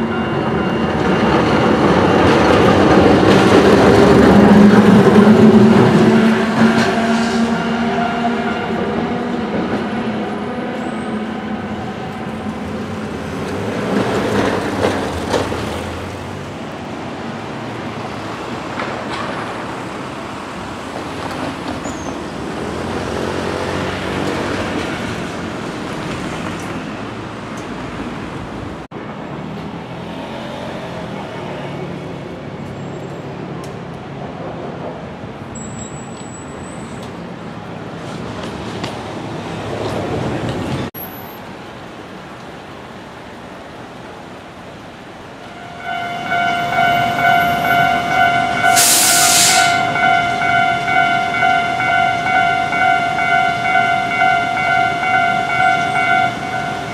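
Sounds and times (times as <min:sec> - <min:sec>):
cars and trucks driving past: 0:00.0 - 0:33.6.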